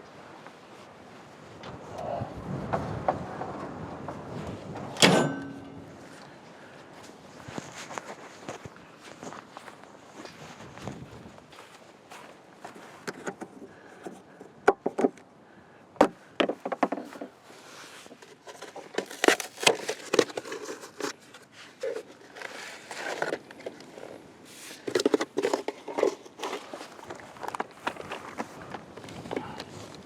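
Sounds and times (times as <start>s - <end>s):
hands handling hard objects: 16.4s - 30.0s.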